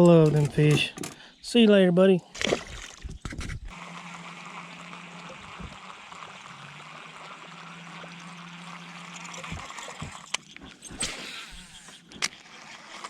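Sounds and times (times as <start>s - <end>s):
running water: 2.3s - 10.8s.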